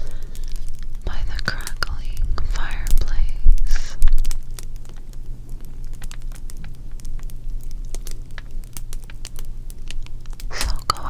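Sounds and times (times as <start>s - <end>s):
fire crackling: 0.0s - 11.0s
low steady hum: 0.0s - 11.0s.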